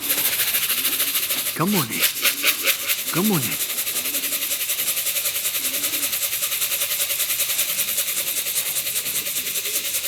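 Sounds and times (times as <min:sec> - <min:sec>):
pigeon cooing: 0:00.0 - 0:06.6, 0:08.6 - 0:10.0.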